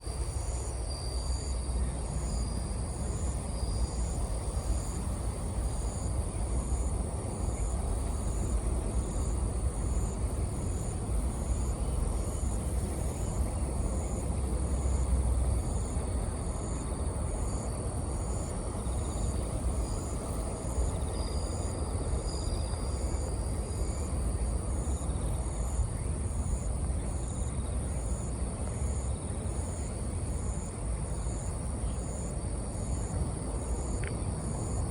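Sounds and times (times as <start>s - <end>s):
crickets chirping: 0.0s - 34.9s.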